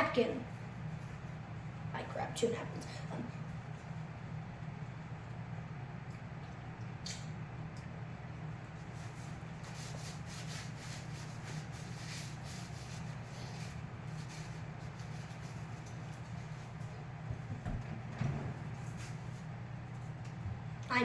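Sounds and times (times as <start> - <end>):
steady low hum: 0.0 - 21.0
short rubbing strokes: 9.0 - 16.8.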